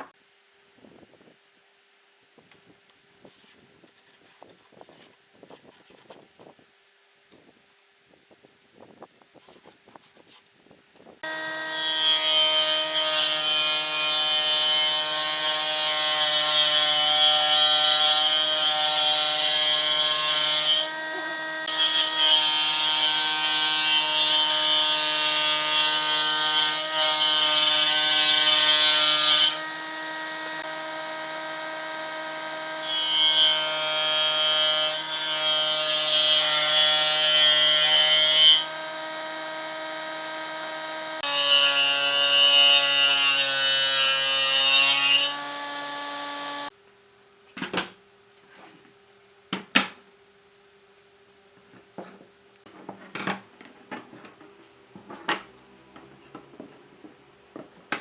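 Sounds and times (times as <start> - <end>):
high rasping wood cutting: 11.2 - 46.7
power tool motor humming: 20.8 - 22.1, 38.6 - 41.6.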